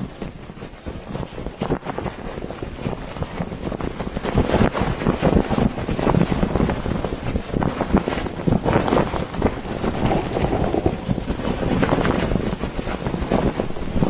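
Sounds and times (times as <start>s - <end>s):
wind buffeting microphone: 6.2s - 14.0s.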